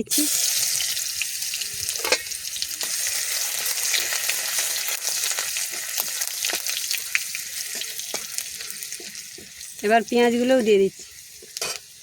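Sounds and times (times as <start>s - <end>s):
garlic sizzling in hot oil: 0.0s - 12.0s
spatula scraping and tapping pan: 5.6s - 9.8s, 10.4s - 11.9s.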